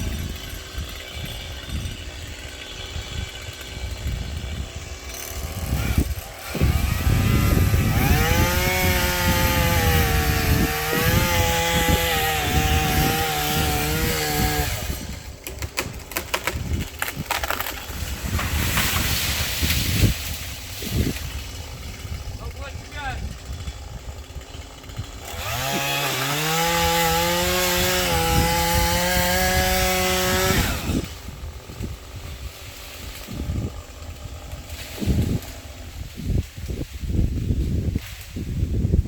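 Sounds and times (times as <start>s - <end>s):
chainsaw engine revving: 0.0s - 36.6s
branch cracking and snapping: 15.4s - 22.2s.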